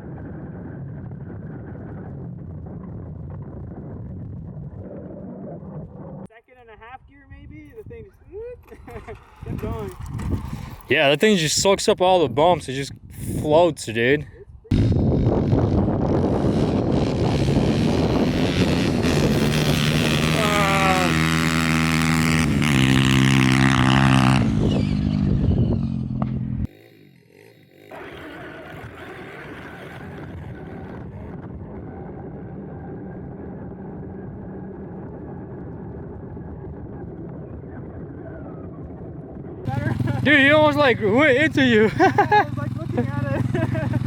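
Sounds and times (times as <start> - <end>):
pit bike engine revving: 8.7 - 11.2, 14.7 - 35.1, 39.7 - 44.0.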